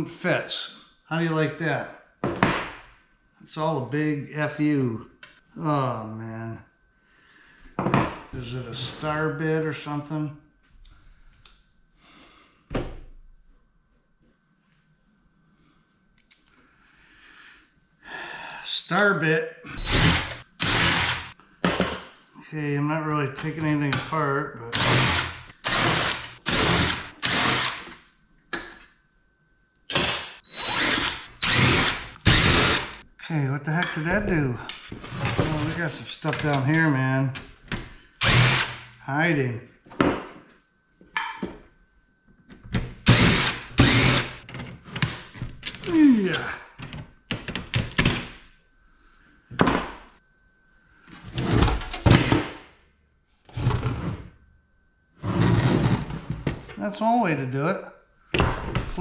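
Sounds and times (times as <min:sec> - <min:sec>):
power drill bursts: 0:19.8 - 0:21.4, 0:24.7 - 0:27.9, 0:30.2 - 0:33.0, 0:38.2 - 0:39.0, 0:43.1 - 0:44.4.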